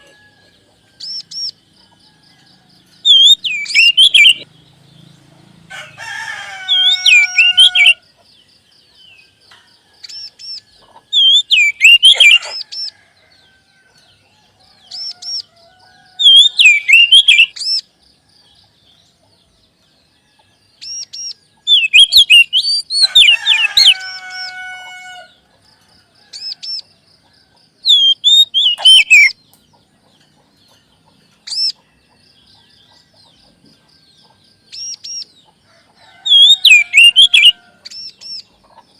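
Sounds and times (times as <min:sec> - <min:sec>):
bird singing whistled phrases: 0:03.1 - 0:04.4, 0:11.2 - 0:12.6, 0:16.2 - 0:17.8, 0:20.8 - 0:24.1, 0:27.9 - 0:29.4, 0:36.2 - 0:38.4.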